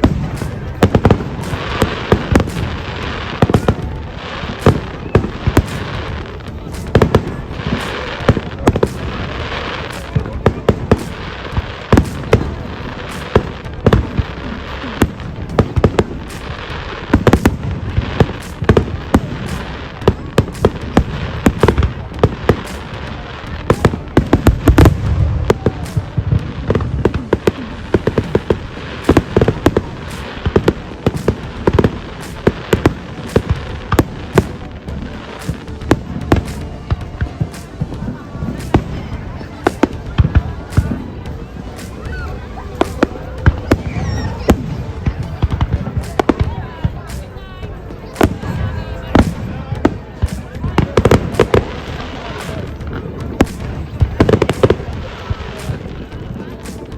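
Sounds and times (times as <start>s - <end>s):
crowd voices: 0.0s - 56.9s
deep fireworks booms: 0.0s - 56.9s
fireworks bangs and crackles: 0.0s - 56.9s
music: 0.0s - 56.9s.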